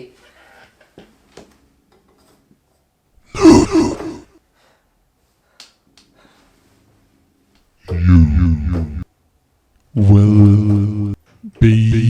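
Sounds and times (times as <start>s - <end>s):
loud human vocal outburst: 3.3s - 4.3s.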